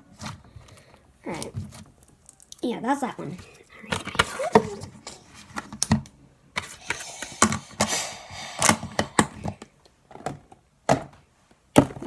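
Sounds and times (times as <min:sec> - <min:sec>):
rustling scrape: 0:06.6 - 0:09.5.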